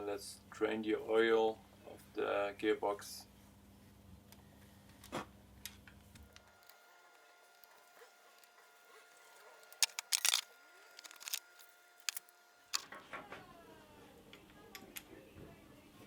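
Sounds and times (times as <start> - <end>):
tools clicking and knocking: 9.6 - 10.4, 11.0 - 12.2.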